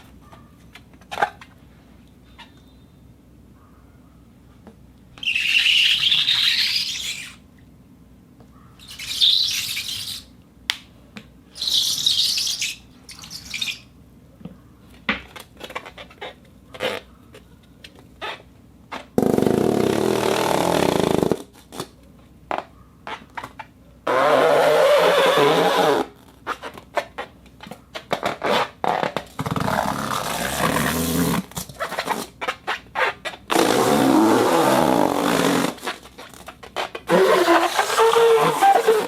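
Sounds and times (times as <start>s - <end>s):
balloon rubbing friction squeak: 5.2s - 7.4s, 8.8s - 10.3s, 11.6s - 13.8s, 15.6s - 17.1s, 18.2s - 21.9s, 24.1s - 27.4s, 28.2s - 39.0s.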